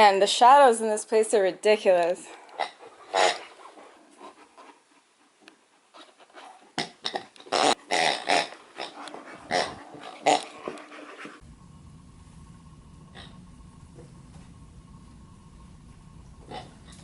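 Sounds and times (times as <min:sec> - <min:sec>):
puppy vocalizing: 0:07.4 - 0:11.4.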